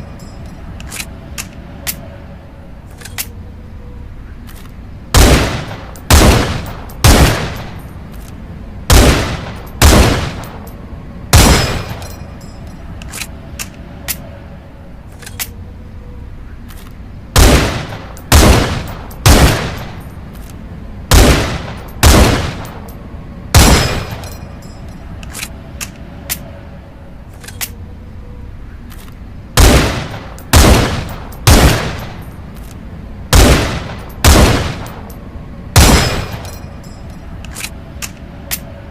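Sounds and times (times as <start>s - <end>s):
rifle shots: 5.1s - 7.7s, 8.9s - 10.6s, 11.3s - 12.0s, 17.4s - 20.0s, 21.1s - 22.8s, 23.5s - 24.2s, 29.6s - 32.2s, 33.3s - 35.0s, 35.8s - 36.4s.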